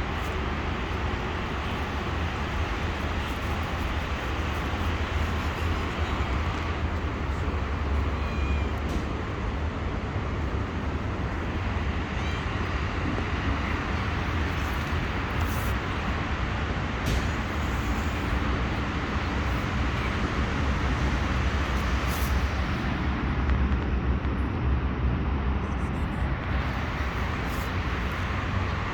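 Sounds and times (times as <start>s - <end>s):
continuous hiss: 0.0s - 24.9s, 25.8s - 28.9s
faint cat meows: 5.5s - 9.6s, 11.2s - 16.1s.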